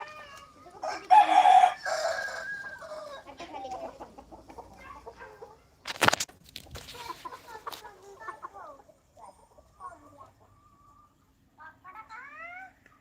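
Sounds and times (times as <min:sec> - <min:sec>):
hens clucking: 0:00.0 - 0:12.2
rooster crowing: 0:00.8 - 0:03.3.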